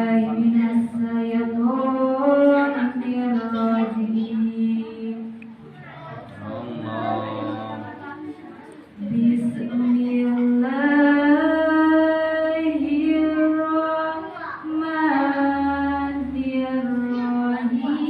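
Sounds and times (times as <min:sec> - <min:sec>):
person reciting melodically: 0:06.2 - 0:08.2.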